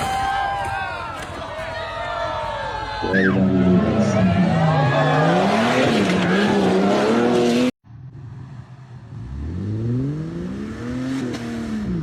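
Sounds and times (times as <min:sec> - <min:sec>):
off-road engine revving hard: 0:03.2 - 0:07.7, 0:09.1 - 0:12.0
second engine revving up: 0:03.2 - 0:12.0.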